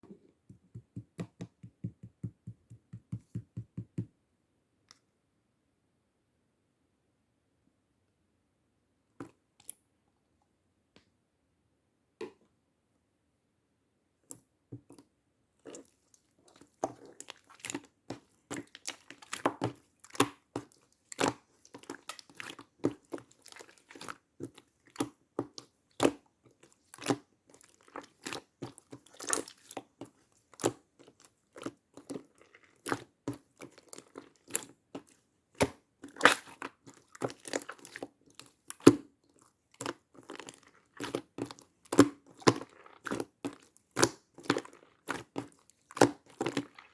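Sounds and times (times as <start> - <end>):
slime crackling and popping: 33.8 - 39.0.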